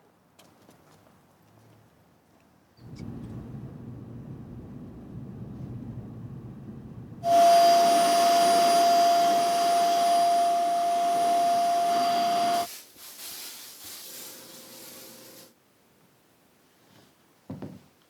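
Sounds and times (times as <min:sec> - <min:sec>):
whistle-like tone: 0:07.2 - 0:12.7
loud steady hiss: 0:07.2 - 0:15.6.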